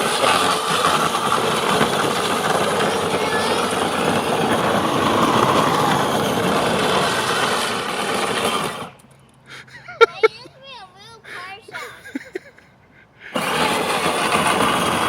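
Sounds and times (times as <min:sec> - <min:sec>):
plastic wheels grinding on ground: 0:00.0 - 0:09.1, 0:13.3 - 0:15.0
electric motors whining: 0:00.0 - 0:09.2.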